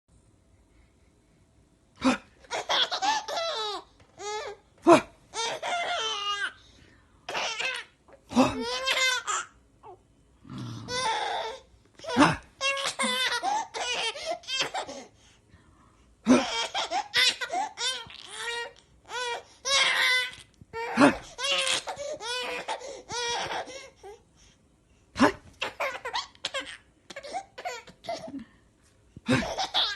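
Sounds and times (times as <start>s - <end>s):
baby laughing: 2.4s - 6.6s, 7.3s - 9.6s, 10.9s - 15.1s, 16.3s - 23.8s, 25.6s - 28.4s, 29.3s - 29.9s.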